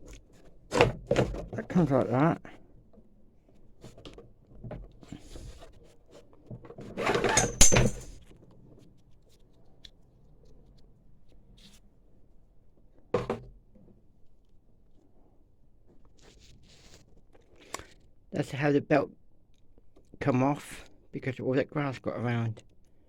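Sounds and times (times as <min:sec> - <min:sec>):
parts clattering: 0:06.9 - 0:08.2
clicks and scrapes of metal parts: 0:06.9 - 0:08.3.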